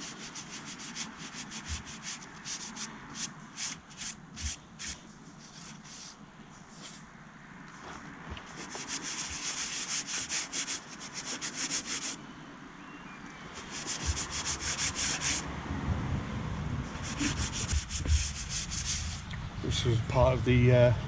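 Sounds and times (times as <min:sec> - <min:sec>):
sandpaper rubbing on timber: 0:00.0 - 0:07.0, 0:08.5 - 0:12.2, 0:13.6 - 0:15.4, 0:17.0 - 0:19.3.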